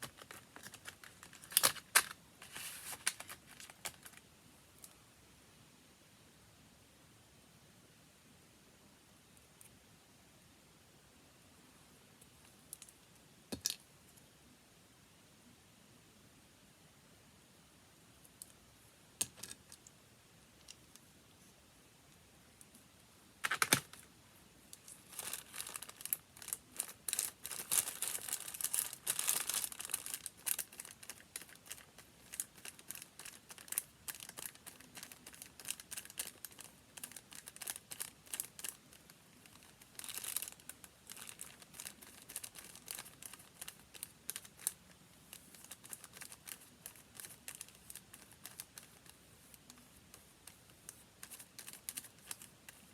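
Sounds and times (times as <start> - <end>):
paper crinkling: 0.0 - 4.2, 23.4 - 24.0, 24.8 - 52.9.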